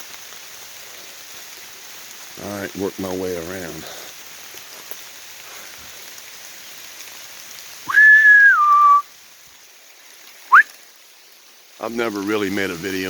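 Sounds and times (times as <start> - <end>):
rain pattering: 0.0 - 13.0
two-note whistle: 7.9 - 9.0.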